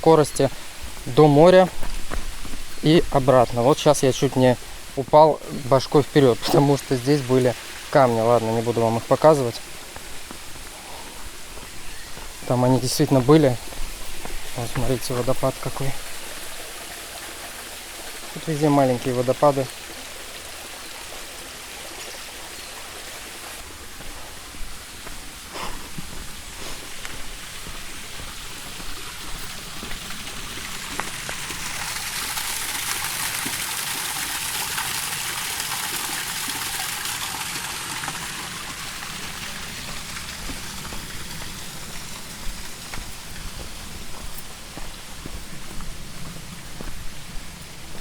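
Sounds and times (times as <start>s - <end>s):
mountain stream rushing: 0.0s - 48.0s.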